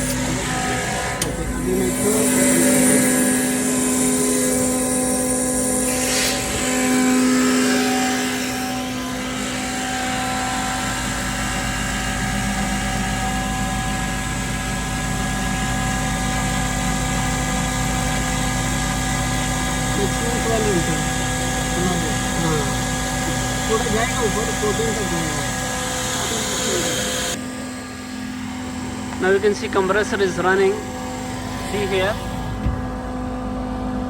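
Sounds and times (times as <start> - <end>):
air compressor humming: 0.0 - 34.0
deeper rumble: 30.9 - 33.9.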